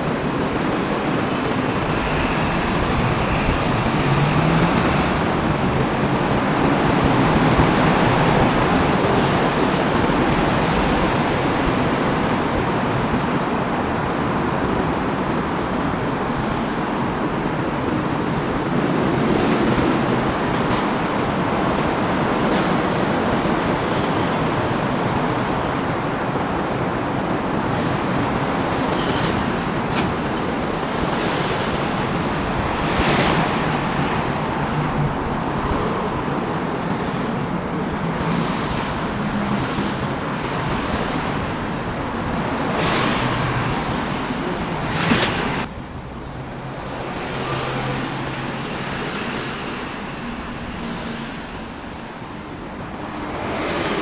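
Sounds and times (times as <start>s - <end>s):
vehicles passing close by: 0.0s - 26.8s, 27.4s - 54.0s
city road traffic: 0.0s - 54.0s
distant traffic hum: 0.0s - 54.0s.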